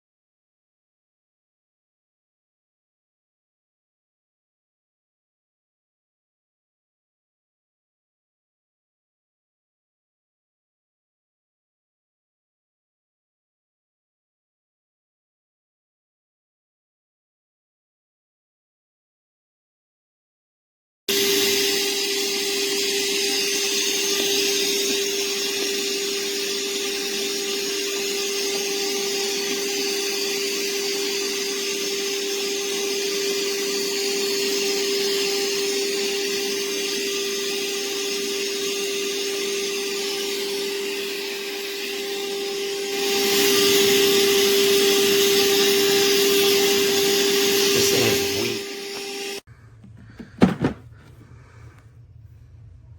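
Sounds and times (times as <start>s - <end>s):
wet-dry vacuum motor whine: 21.1s - 51.2s.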